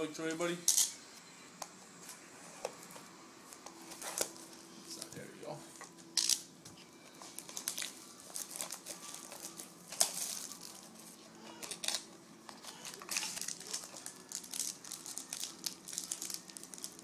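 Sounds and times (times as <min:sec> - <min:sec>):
plastic wrapping crinkling and tearing: 0:07.2 - 0:17.0.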